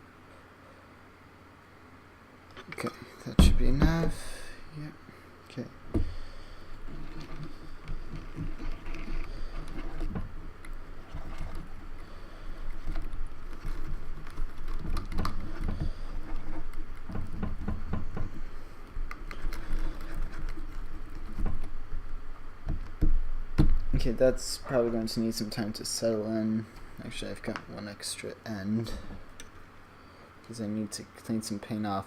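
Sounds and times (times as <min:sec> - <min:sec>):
handling and rubbing noise: 0:02.6 - 0:04.8, 0:05.6 - 0:27.8.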